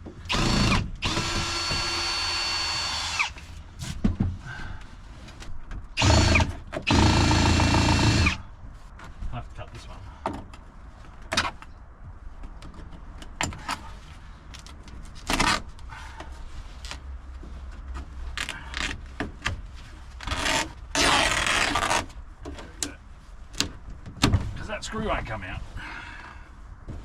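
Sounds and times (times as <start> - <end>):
cordless drill running: 0.3 - 3.4, 6.0 - 8.4.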